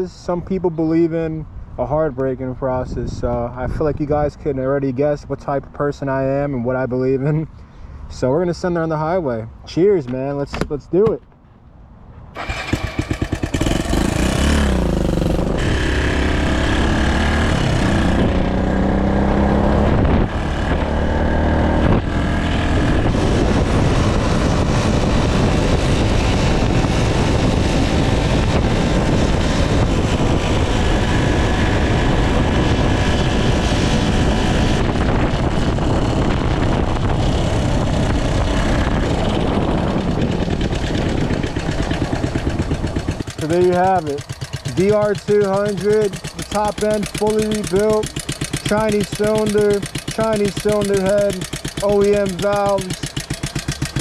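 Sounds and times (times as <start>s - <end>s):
wind rush: 12.3s - 51.2s
motorcycle engine accelerating: 12.4s - 54.0s.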